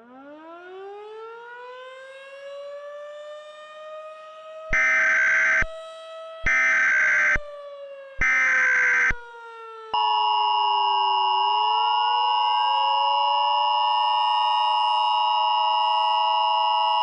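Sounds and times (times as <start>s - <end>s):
siren-like tone: 3.8s - 5.8s, 6.4s - 7.6s, 8.2s - 17.0s
two-tone alert signal: 10.0s - 17.0s.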